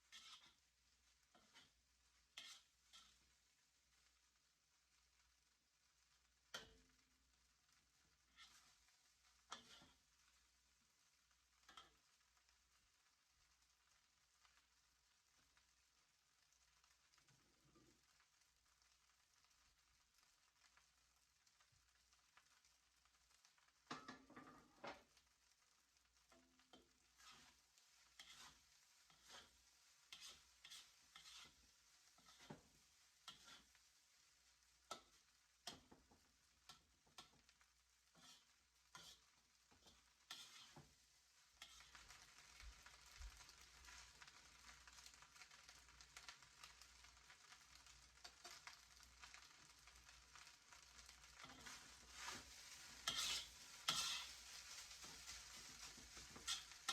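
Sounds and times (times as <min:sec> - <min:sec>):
utensil scraping a pan: 0:00.0 - 0:03.3, 0:08.2 - 0:10.1, 0:26.3 - 0:33.9, 0:34.9 - 0:45.5, 0:47.5 - 0:49.4, 0:50.8 - 0:56.9
faint sizzle of food frying: 0:00.0 - 0:56.9.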